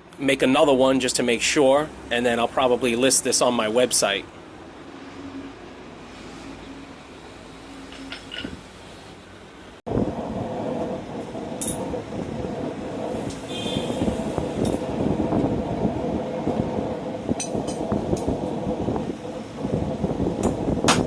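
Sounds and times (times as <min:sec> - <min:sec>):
forge roaring: 0:09.9 - 0:21.0.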